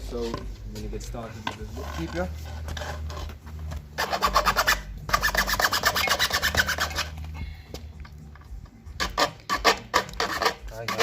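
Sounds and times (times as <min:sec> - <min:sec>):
rasping strokes on plastic pipe: 0:01.5 - 0:07.4, 0:08.9 - 0:11.0.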